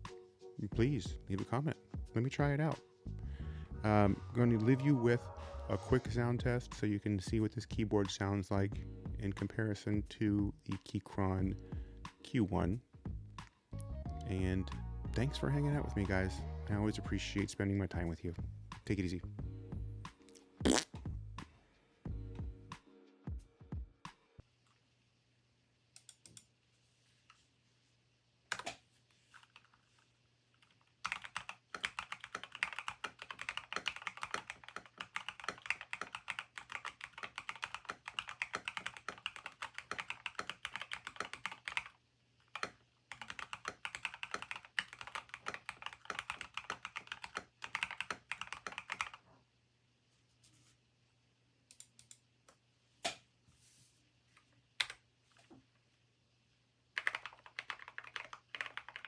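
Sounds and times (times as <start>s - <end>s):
mechanical keyboard typing: 31.0s - 41.9s, 42.5s - 49.2s, 57.0s - 59.0s.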